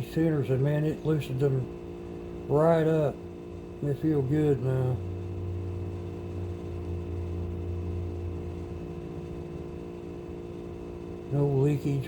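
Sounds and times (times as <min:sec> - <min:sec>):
electrical hum: 0:00.0 - 0:12.0
low drone: 0:00.0 - 0:12.0.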